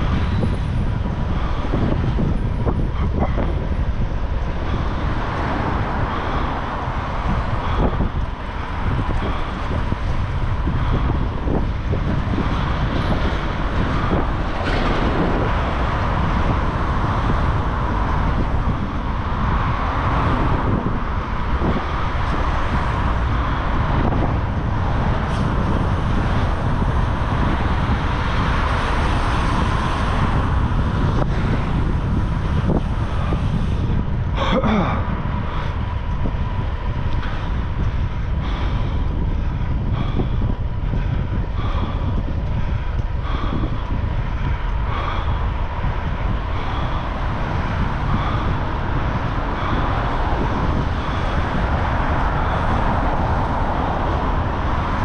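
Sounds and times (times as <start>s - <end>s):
steady low rumble: 0.0s - 55.0s
person breathing heavily: 1.0s - 55.0s.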